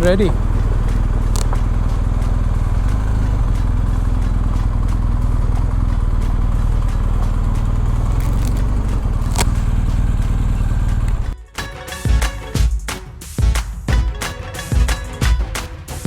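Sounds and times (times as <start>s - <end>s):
motorcycle engine idling: 0.0s - 11.4s.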